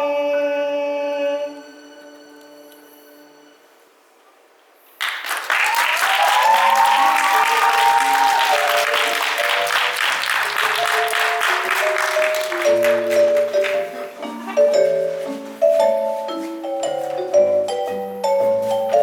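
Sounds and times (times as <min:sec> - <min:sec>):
audience applauding: 0:05.0 - 0:14.6
sustained keyboard notes: 0:08.6 - 0:19.0.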